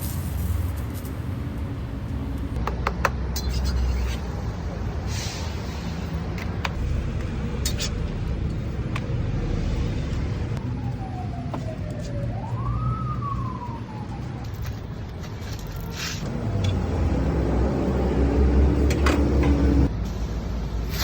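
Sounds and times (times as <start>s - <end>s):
street traffic rumble: 0.0s - 21.0s
siren wailing: 10.6s - 14.8s.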